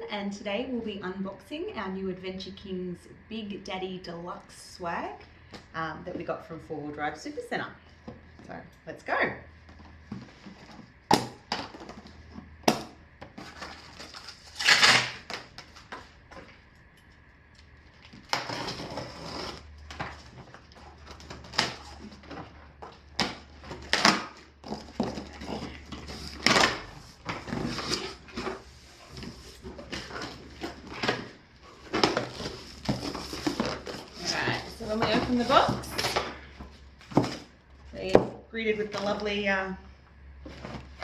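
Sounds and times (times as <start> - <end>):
cardboard tearing: 13.4 - 16.0, 18.2 - 36.3.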